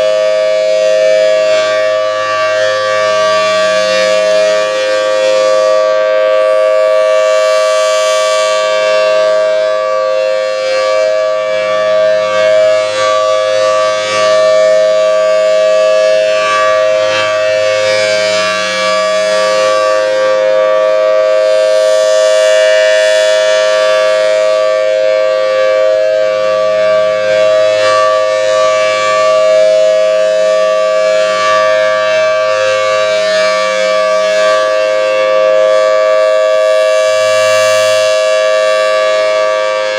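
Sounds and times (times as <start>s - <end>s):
civil defense siren two-tone chord: 0.0s - 39.9s.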